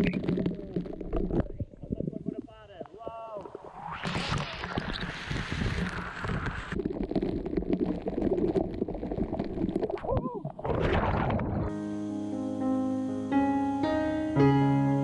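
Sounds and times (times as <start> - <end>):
wind noise on microphone: 1.0 - 6.8.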